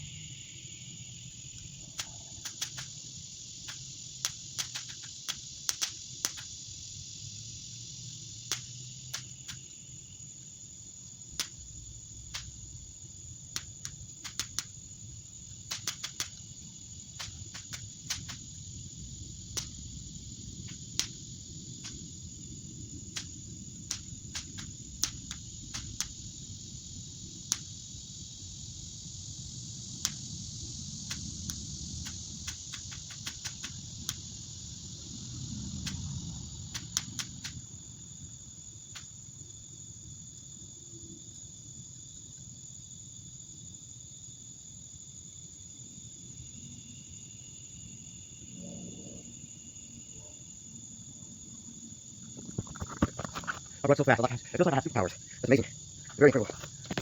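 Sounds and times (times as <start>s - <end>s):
high insect chorus: 0.0s - 57.0s
cap gun pops: 2.0s - 3.0s, 3.7s - 6.5s, 13.6s - 14.8s, 15.7s - 16.4s, 17.2s - 18.4s, 19.5s - 19.8s, 20.7s - 21.2s, 23.2s - 26.1s, 31.1s - 34.2s, 36.8s - 37.6s.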